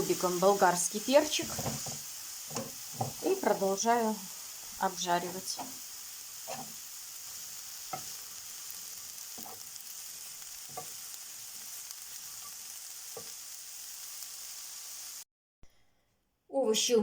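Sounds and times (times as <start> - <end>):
vegetables sizzling in oil: 0.0 - 15.3
utensil knocking against pan: 1.5 - 3.2.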